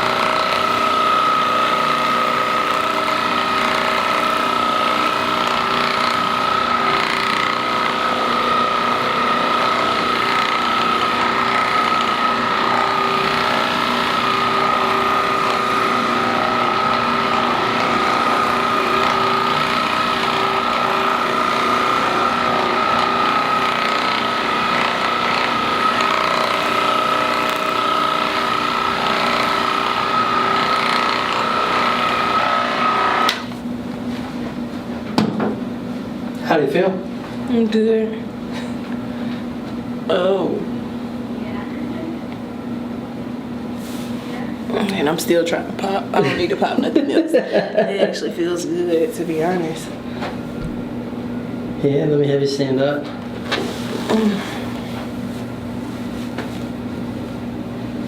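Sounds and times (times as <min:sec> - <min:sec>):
massage gun motor whine: 0:00.0 - 0:34.6, 0:48.2 - 0:58.0.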